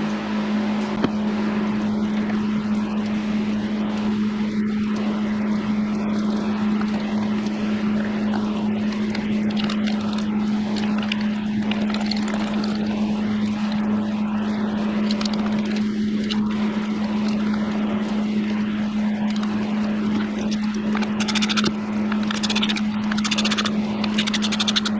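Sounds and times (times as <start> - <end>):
mechanical drone with low hum: 0.0 - 24.9.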